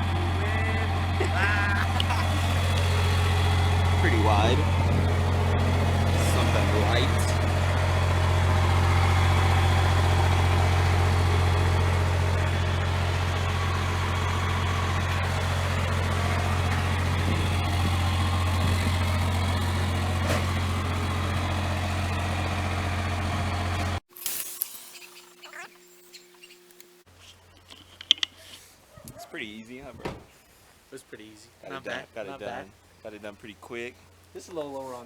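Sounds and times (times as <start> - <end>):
diesel truck engine idling: 0.0 - 24.0.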